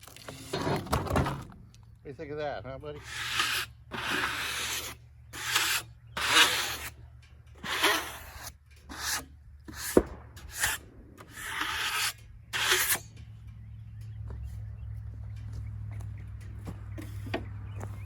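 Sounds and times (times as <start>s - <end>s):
rubbing or scraping strokes: 2.9s - 7.0s, 7.6s - 13.1s.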